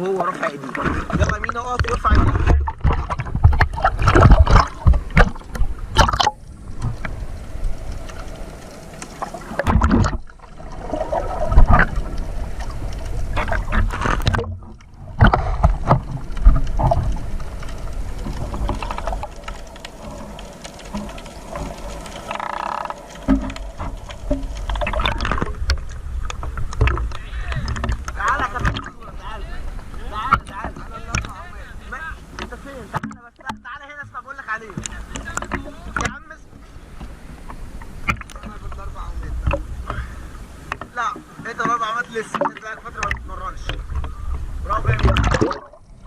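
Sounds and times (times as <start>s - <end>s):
water sloshing and splashing: 0.0s - 46.0s
wind rumbling on microphone: 0.8s - 32.4s, 42.9s - 46.0s.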